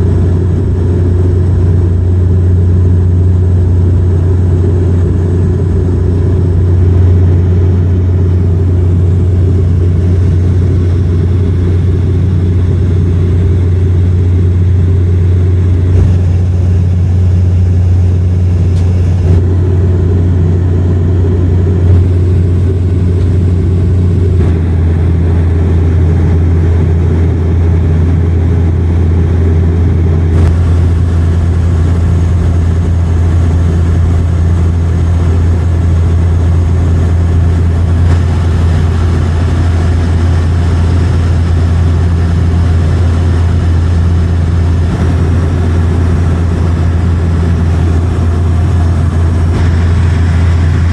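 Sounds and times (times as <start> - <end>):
aircraft engines rumbling: 0.0 - 50.9.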